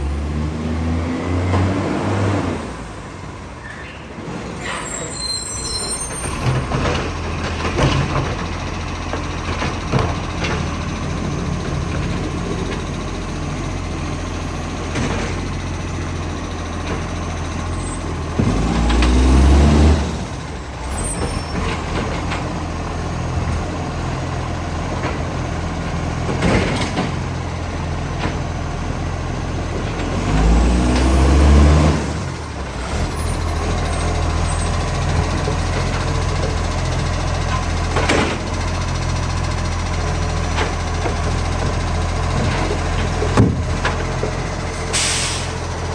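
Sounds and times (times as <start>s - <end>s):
diesel engine with exhaust leak: 0.0s - 45.9s.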